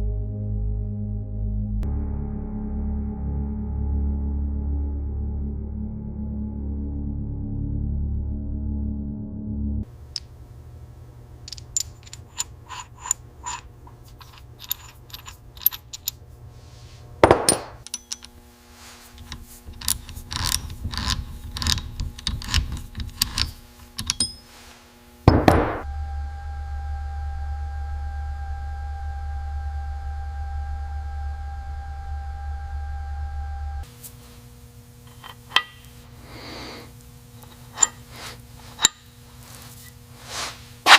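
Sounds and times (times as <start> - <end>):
low hum with held tone: 9.2 - 40.9
metal parts and tools clinking: 11.4 - 16.2, 17.2 - 18.4, 19.0 - 24.6, 35.0 - 36.0, 37.4 - 40.9.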